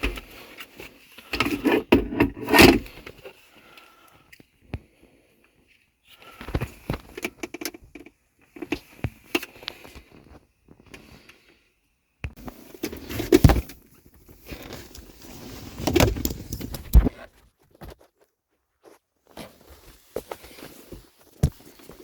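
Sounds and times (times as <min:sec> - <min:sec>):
rustling: 0:12.4 - 0:22.0.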